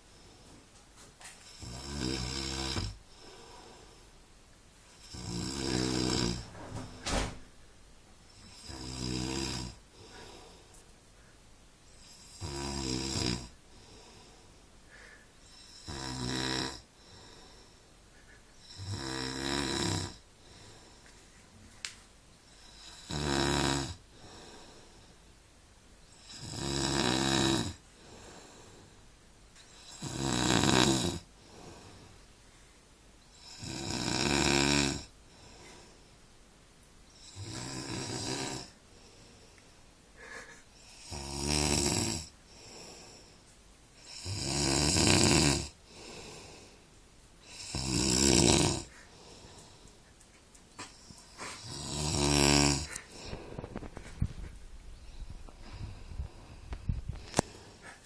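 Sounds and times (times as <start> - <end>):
man snoring: 1.5 - 3.4, 5.0 - 7.4, 8.4 - 9.8, 12.0 - 13.6, 15.5 - 16.9, 18.6 - 20.2, 22.7 - 24.6, 26.2 - 27.8, 29.8 - 31.8, 33.3 - 35.1, 37.2 - 38.8, 40.2 - 43.2, 44.0 - 46.7, 47.4 - 48.9, 51.6 - 53.4.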